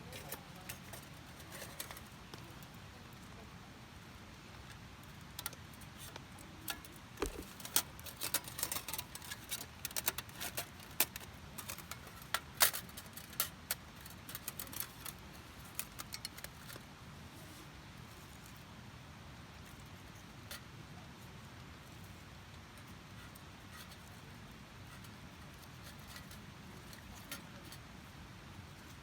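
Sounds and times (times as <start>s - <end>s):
small hard objects clinking: 7.2s - 10.4s.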